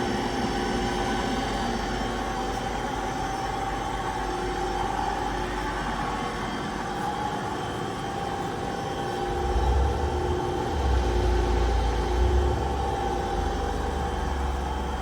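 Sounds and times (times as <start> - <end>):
lathe running with hum and whine: 0.0 - 15.0
low rumble: 9.3 - 15.0.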